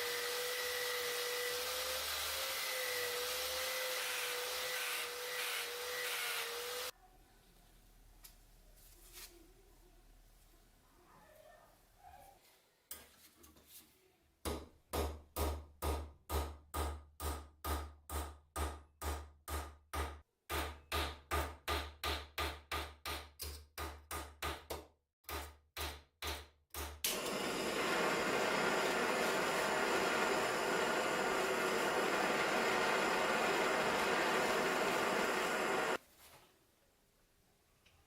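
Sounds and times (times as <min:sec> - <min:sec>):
power tool running: 0:00.0 - 0:06.9, 0:27.1 - 0:36.0
hammer striking with dull thuds: 0:14.4 - 0:27.1.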